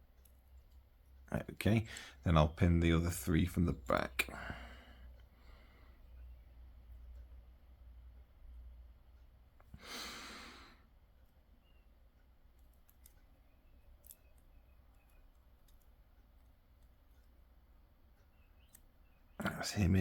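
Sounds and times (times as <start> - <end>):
breathy sigh: 4.3 - 5.9, 9.8 - 10.8.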